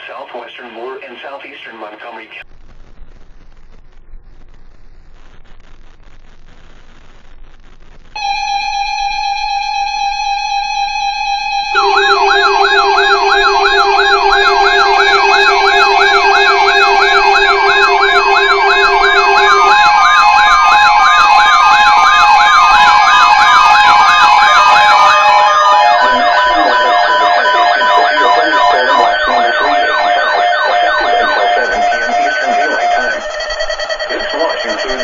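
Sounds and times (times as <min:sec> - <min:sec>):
faint static: 0:00.0 - 0:35.0
lower steady tone: 0:02.5 - 0:35.0
fast-warbling siren tones: 0:08.2 - 0:35.0
steady electronic tone: 0:08.2 - 0:35.0.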